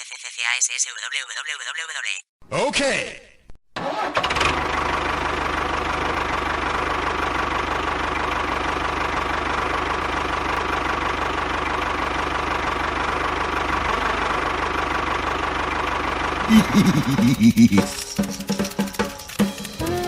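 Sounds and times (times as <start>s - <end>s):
small engine idling: 4.2s - 20.0s.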